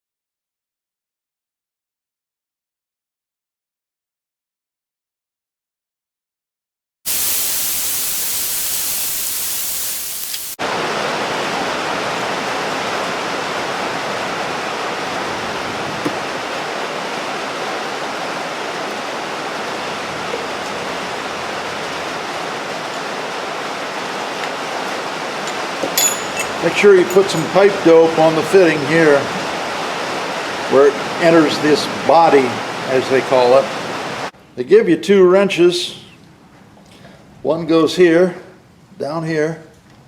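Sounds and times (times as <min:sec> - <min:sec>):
steady hiss: 0:07.1 - 0:10.8.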